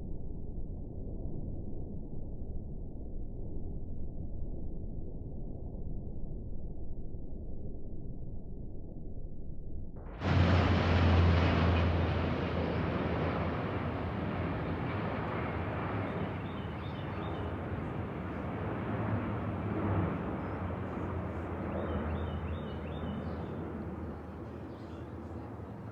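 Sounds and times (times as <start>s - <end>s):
turboprop aircraft droning: 10.1s - 25.9s.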